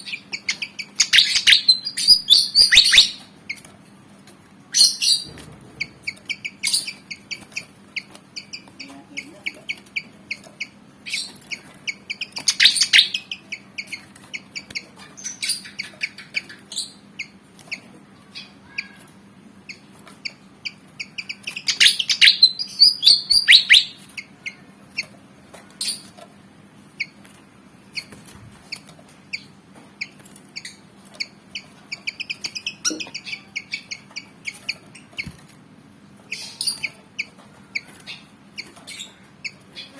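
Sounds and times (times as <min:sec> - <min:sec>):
bird chirping sharply: 0:00.0 - 0:03.3, 0:21.3 - 0:24.0, 0:32.1 - 0:34.6
bird chattering: 0:00.0 - 0:03.6, 0:04.7 - 0:19.0, 0:19.7 - 0:25.1, 0:29.3 - 0:35.2.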